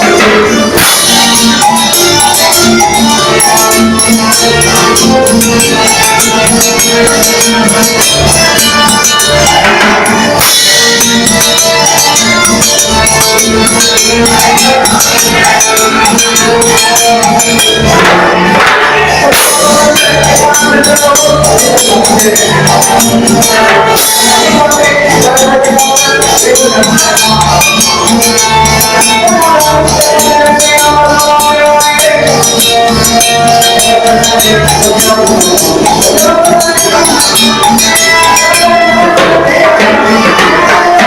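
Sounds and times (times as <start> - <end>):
electronic keyboard latin dance music: 0.0 - 41.0.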